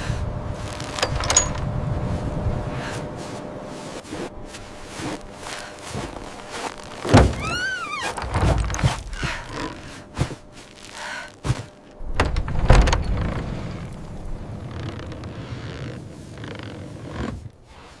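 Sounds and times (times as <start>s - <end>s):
heavy thuds and knocks: 7.0s - 10.5s, 11.4s - 14.2s
short rising falling squeak: 7.3s - 8.2s.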